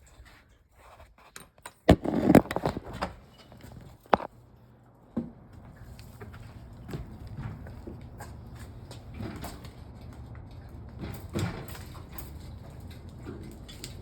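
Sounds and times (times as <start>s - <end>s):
generator rattling on its frame: 7.0s - 14.0s.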